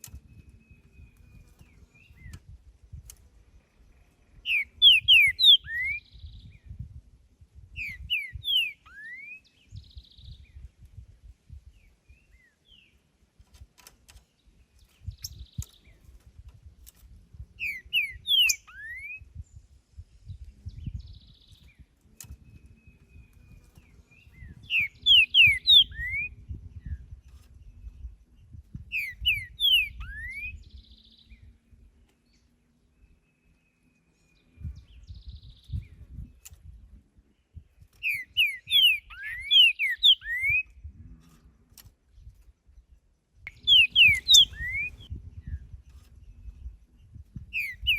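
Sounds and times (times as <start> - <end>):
bird whistling song: 4.4 - 6.8, 7.8 - 10.7, 14.8 - 16.0, 17.6 - 19.7, 20.3 - 28.0, 28.8 - 31.6, 33.2 - 36.5, 37.9 - 40.8, 43.4 - 47.9.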